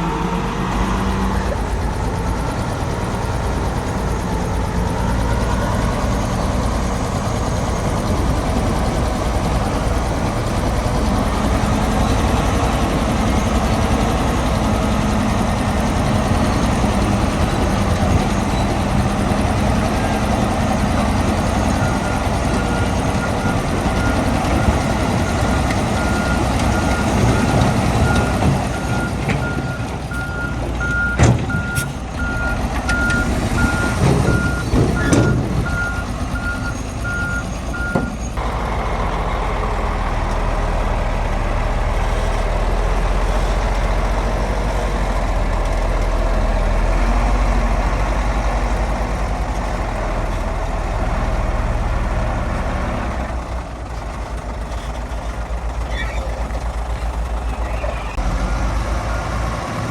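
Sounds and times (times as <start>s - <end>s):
diesel machinery running: 0.0s - 59.9s
reversing alarm beeping: 21.5s - 38.4s.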